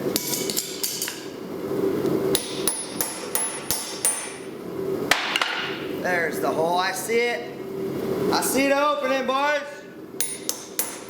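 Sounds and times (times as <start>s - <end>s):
hammer striking metal on anvil: 2.3s - 4.5s, 10.2s - 11.0s.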